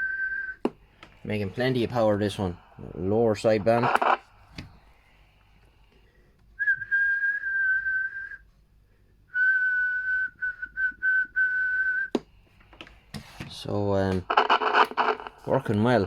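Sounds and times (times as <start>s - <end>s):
man whistling high note: 0.0s - 0.6s, 6.6s - 8.5s, 9.3s - 12.1s.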